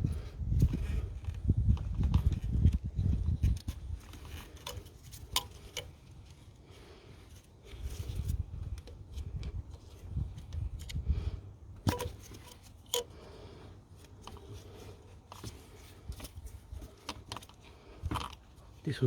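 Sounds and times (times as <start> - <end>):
hands handling plastic parts: 0.2 - 19.0
connectors clicking and clunking: 11.7 - 13.3, 14.0 - 18.6.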